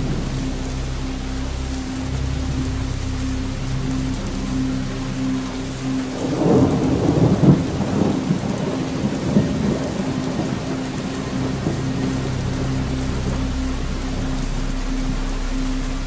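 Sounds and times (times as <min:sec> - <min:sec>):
rain: 0:00.0 - 0:16.0
steady low hum: 0:00.0 - 0:16.0
thunder rolling: 0:06.2 - 0:13.5.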